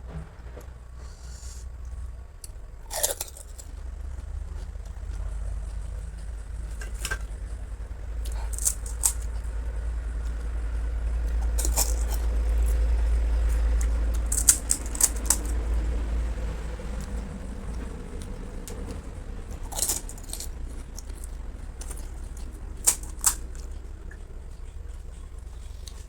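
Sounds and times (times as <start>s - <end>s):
low rumble: 0.0s - 26.0s
crisp shells crunching: 2.8s - 3.8s, 8.3s - 9.4s, 11.3s - 12.8s, 13.5s - 15.6s, 19.5s - 23.7s.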